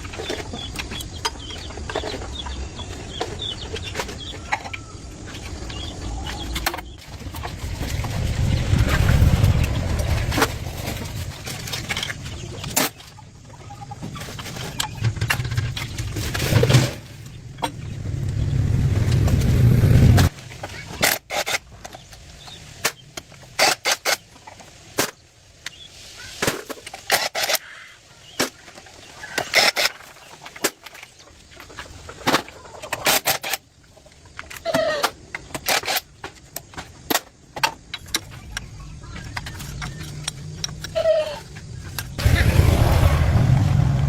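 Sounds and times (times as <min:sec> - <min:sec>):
low engine hum: 0:05.3 - 0:11.7, 0:17.3 - 0:20.3, 0:42.1 - 0:44.0.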